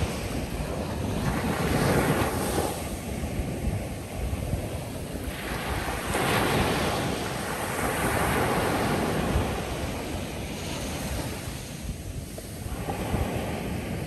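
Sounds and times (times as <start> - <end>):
ocean surf washing on sand: 0.0 - 14.0.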